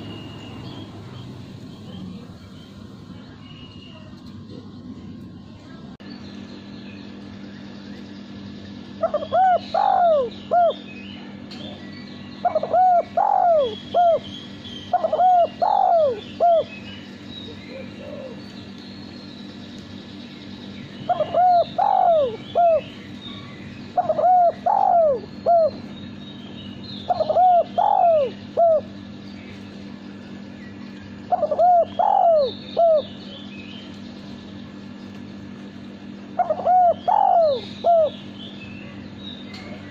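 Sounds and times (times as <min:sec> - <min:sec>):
dove cooing: 0:09.0 - 0:10.9, 0:12.4 - 0:14.3, 0:14.9 - 0:16.8, 0:17.6 - 0:18.4, 0:21.1 - 0:25.9, 0:27.1 - 0:29.0, 0:31.2 - 0:33.2, 0:36.3 - 0:38.3.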